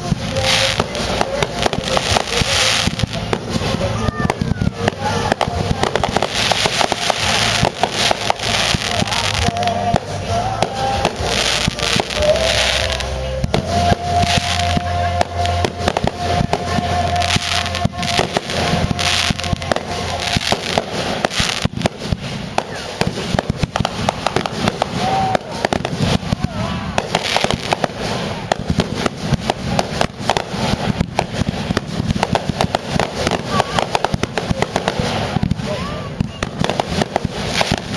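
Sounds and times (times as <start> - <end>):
fireworks bangs and crackle: 0.0 - 37.9.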